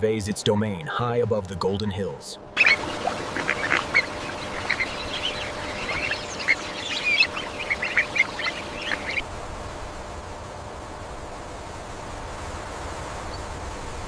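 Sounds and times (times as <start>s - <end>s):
faint steady hiss: 0.0s - 14.0s
short bird calls: 2.6s - 9.2s.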